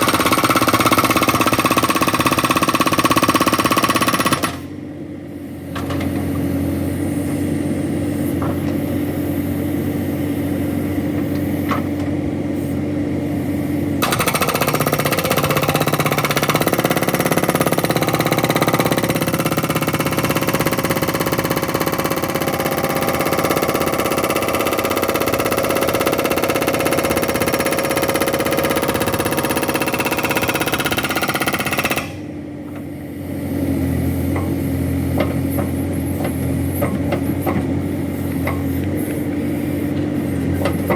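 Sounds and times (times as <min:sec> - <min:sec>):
hydraulic rock breaker hammering: 0:00.0 - 0:04.7, 0:14.0 - 0:32.2, 0:34.3 - 0:40.9
backhoe engine running: 0:00.0 - 0:40.9.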